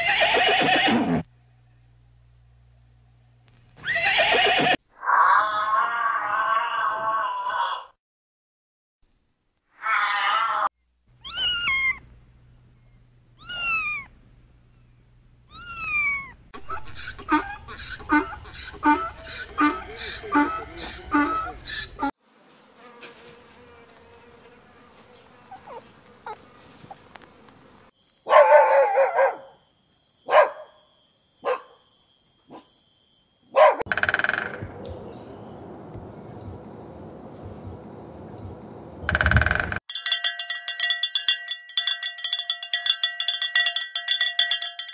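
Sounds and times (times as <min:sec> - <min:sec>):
cat meowing: 0:09.8 - 0:12.0, 0:13.4 - 0:14.1, 0:15.5 - 0:16.4
dog yapping: 0:11.3 - 0:12.0, 0:13.4 - 0:14.1, 0:25.5 - 0:25.9, 0:28.3 - 0:29.5, 0:30.3 - 0:30.7, 0:31.4 - 0:31.8, 0:33.6 - 0:33.8
dog barking: 0:25.6 - 0:25.9, 0:28.2 - 0:29.6, 0:30.3 - 0:30.8, 0:31.4 - 0:31.8, 0:32.5 - 0:32.7, 0:33.5 - 0:33.9.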